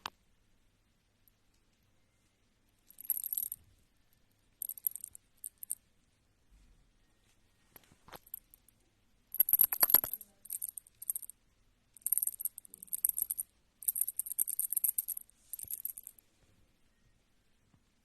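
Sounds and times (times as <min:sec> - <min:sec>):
light metallic jingling: 0:02.9 - 0:03.6, 0:04.6 - 0:05.8, 0:09.4 - 0:11.3, 0:12.0 - 0:16.2.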